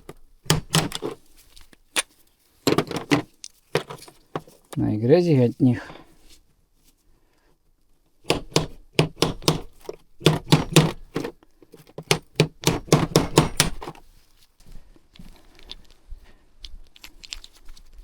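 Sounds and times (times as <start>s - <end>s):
hammer tapping metal: 12.4s - 13.8s.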